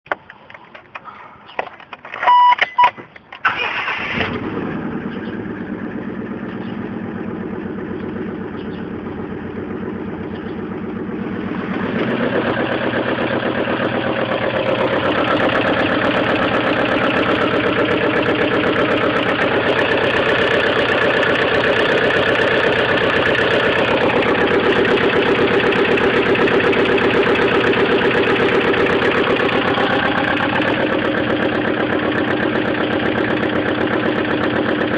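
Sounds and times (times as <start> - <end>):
car engine cranking and starting: 1.8 - 34.9
short beeps: 2.2 - 3.0.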